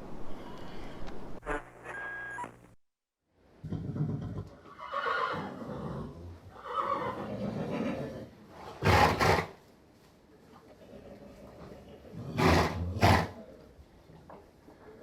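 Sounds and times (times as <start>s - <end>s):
horse neighing: 3.7s - 9.5s.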